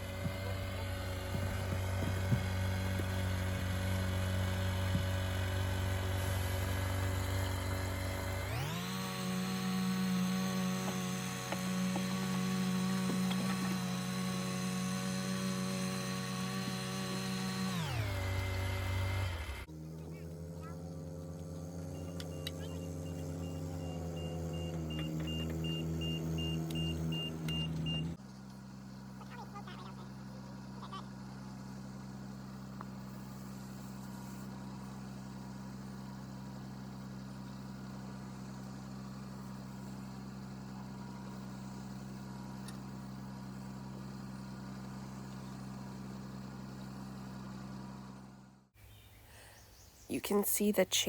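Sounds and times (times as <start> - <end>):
small engine running: 0.0 - 49.8
backup alarm beeping: 22.0 - 28.0.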